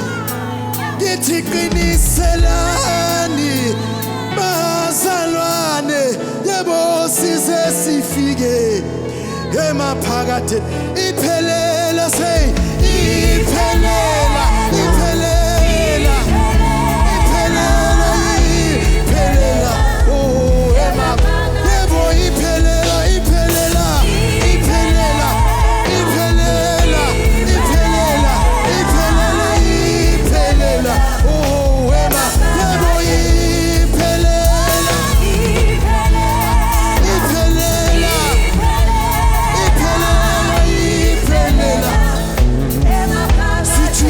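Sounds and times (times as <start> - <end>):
gospel band playing: 0.0 - 44.0.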